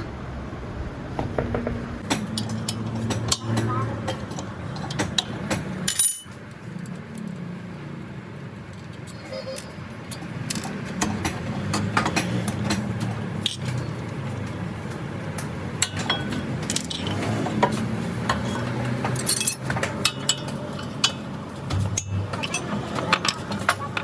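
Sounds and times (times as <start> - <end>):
metal tools clinking: 2.1 - 7.5, 8.7 - 12.7, 13.4 - 14.0, 15.8 - 24.0.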